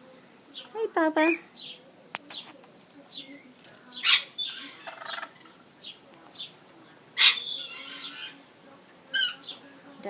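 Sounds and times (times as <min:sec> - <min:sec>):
lorikeets chirping and chattering: 0:00.4 - 0:08.5, 0:09.1 - 0:10.0
lorikeet harsh screeches: 0:07.2 - 0:08.4.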